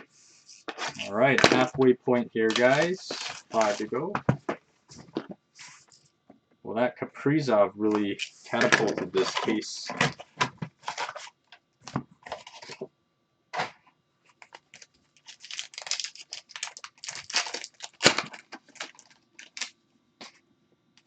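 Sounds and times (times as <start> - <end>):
card wrappers tearing and crinkling: 0.7 - 1.7, 2.4 - 4.0, 7.9 - 10.2, 10.8 - 11.4, 14.5 - 19.8.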